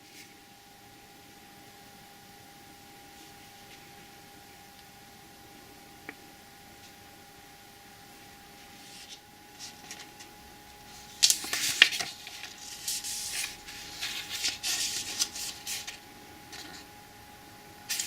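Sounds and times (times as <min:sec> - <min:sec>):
faint steady hum: 0:00.0 - 0:18.0
packaging rustling and scraping: 0:08.6 - 0:16.9.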